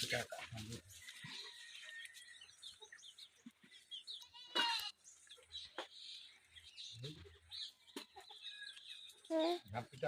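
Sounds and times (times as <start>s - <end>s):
wavering animal bleat: 4.2s - 5.0s.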